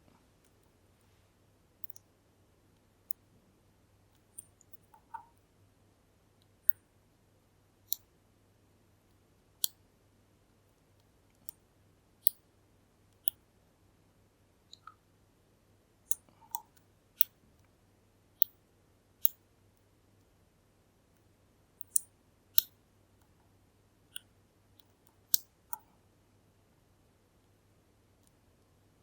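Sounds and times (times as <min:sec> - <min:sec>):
lock pick metallic clicks: 0:01.8 - 0:02.0, 0:21.8 - 0:22.8.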